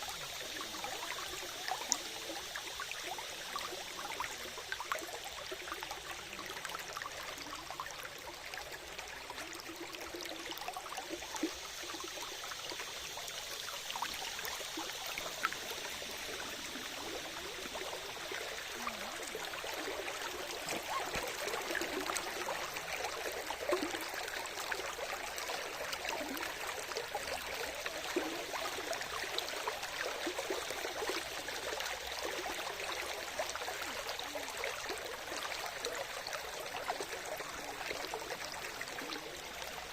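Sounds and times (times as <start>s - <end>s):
stream trickling over stones: 0.0s - 39.9s
water splashes and drips: 0.0s - 39.9s.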